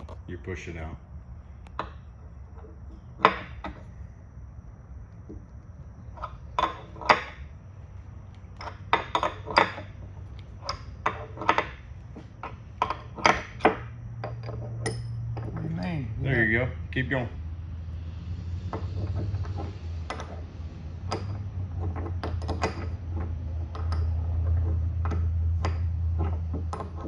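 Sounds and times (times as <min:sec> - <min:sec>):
low hum: 0:00.0 - 0:27.0
metal clamps clinking and knocking: 0:08.5 - 0:15.9, 0:21.1 - 0:27.0.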